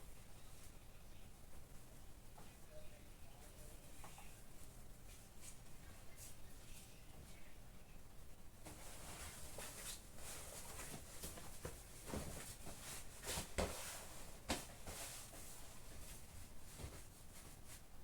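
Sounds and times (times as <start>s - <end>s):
clothes rustling: 8.6s - 18.0s.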